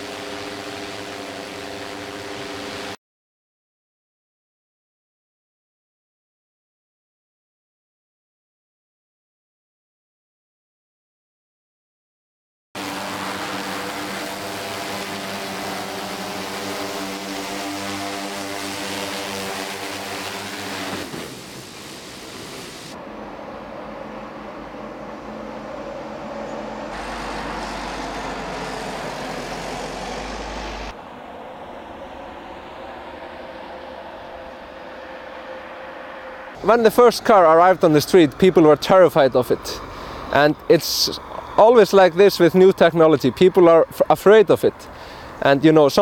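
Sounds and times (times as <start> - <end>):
drone propellers humming: 0.0 - 3.0, 12.8 - 46.0
rushing noise: 12.8 - 44.0.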